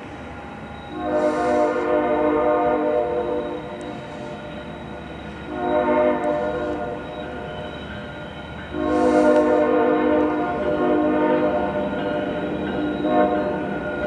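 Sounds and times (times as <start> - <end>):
train rumbling: 0.0 - 14.0
locomotive air horn blasts: 0.9 - 4.4, 5.5 - 7.0, 8.7 - 12.0, 13.0 - 13.7.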